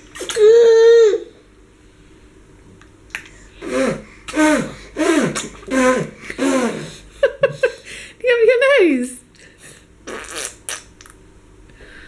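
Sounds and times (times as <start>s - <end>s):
baby spluttering water: 0.0s - 0.8s, 3.1s - 7.0s.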